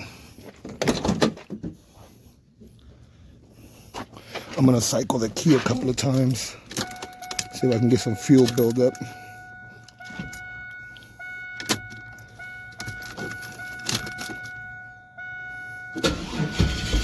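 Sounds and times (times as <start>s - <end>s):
ignition key clicks: 6.6s - 9.2s, 9.8s - 14.8s
fuel pump electrical whine: 9.0s - 17.0s
starter cranking engine: 16.0s - 17.0s.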